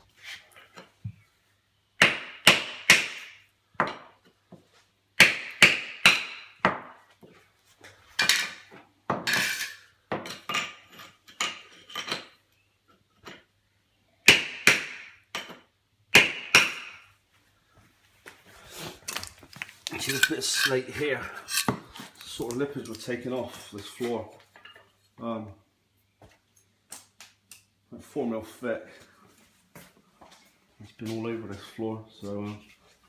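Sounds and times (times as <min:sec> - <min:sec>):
hammer and chisel striking tiles: 0:08.2 - 0:12.4.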